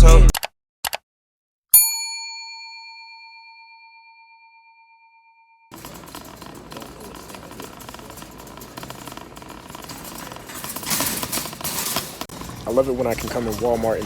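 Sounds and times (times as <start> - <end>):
store background noise: 5.7 - 14.0.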